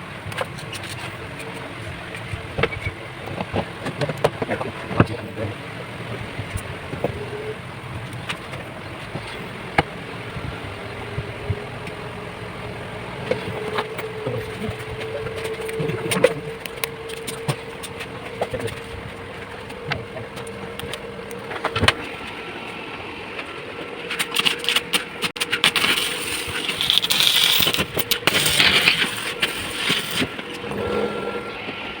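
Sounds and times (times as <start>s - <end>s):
steady hum: 0.0s - 32.0s
welding arc crackling: 24.2s - 31.4s.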